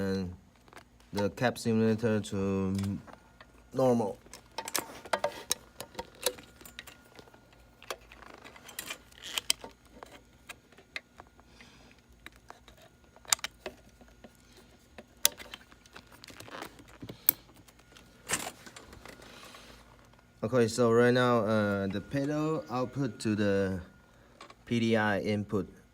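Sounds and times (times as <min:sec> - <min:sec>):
faint electrical hum: 0:00.0 - 0:25.9
audio gear clicks and rattles: 0:02.7 - 0:19.3.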